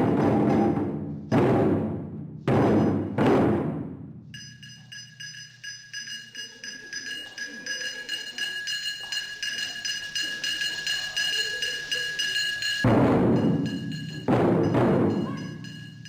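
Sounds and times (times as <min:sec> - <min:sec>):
metal hand percussion beat: 0:00.0 - 0:16.0
deep taiko drum stroke: 0:12.9 - 0:15.5.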